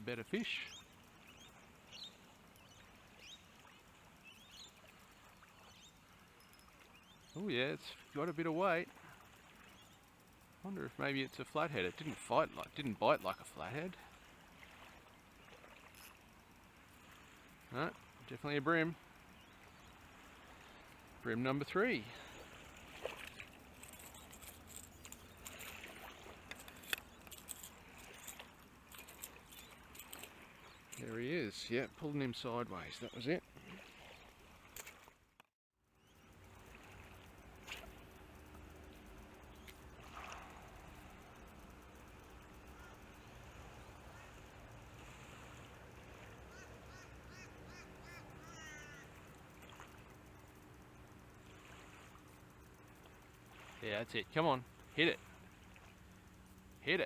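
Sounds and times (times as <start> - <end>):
light hiss: 0.0 - 35.2, 36.0 - 57.0
rapid bird trill: 0.5 - 8.4, 9.3 - 10.5, 38.9 - 44.9, 46.1 - 51.3
faint bird calls: 39.0 - 50.7.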